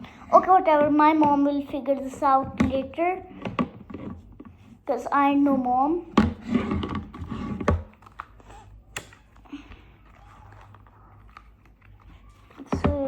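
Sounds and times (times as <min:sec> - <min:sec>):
plastic mask clicks and rustles: 0:06.2 - 0:12.8.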